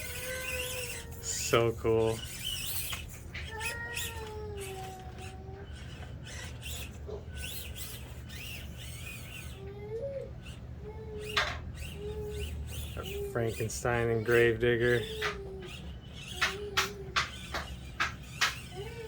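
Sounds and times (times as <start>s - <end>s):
child whining and crying: 0.0s - 1.5s, 3.4s - 13.4s, 15.0s - 17.4s, 18.6s - 19.0s.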